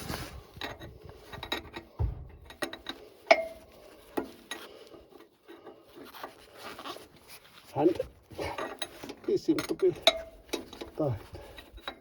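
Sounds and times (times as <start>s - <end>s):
metal tool clinking on fittings: 0.6s - 6.3s, 8.5s - 12.0s
dull bump: 1.9s - 2.7s.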